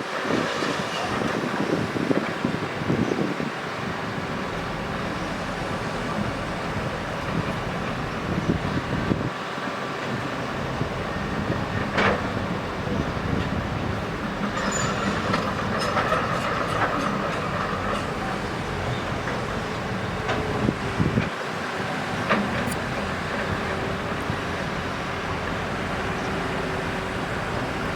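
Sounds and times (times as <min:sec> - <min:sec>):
heavy machinery rumbling: 0:03.8 - 0:27.9
metallic squeal: 0:14.6 - 0:16.6.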